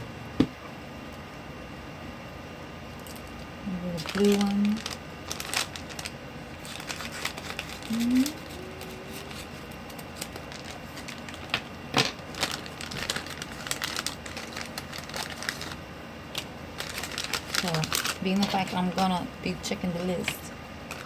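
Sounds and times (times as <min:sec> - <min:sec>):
plastic packaging crinkling: 0:03.0 - 0:19.2.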